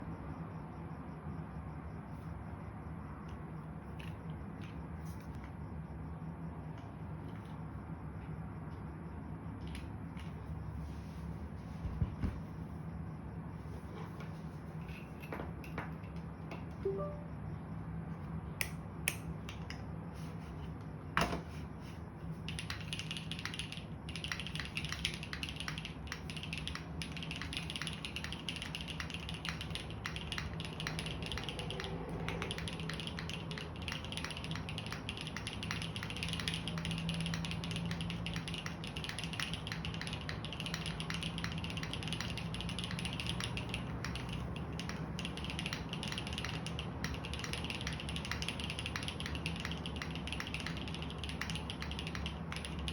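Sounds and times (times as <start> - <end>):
mechanical keyboard typing: 22.4 - 52.9.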